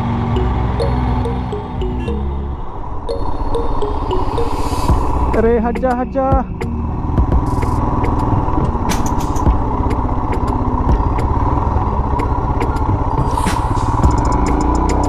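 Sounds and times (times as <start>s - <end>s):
motorcycle engine running: 6.4s - 13.3s, 13.9s - 15.0s.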